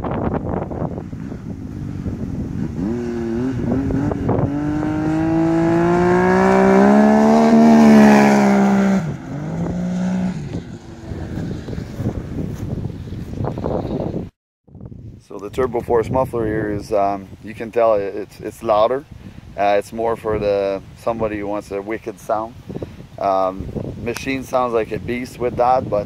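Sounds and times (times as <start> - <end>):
snowmobile engine revving: 1.4 - 12.5.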